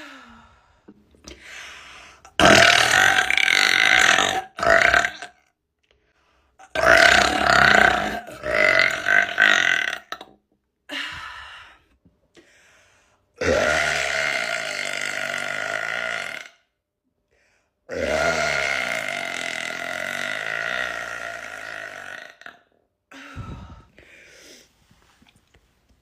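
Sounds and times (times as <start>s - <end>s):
woman burping: 2.4s - 5.3s, 6.6s - 10.3s, 17.9s - 23.8s.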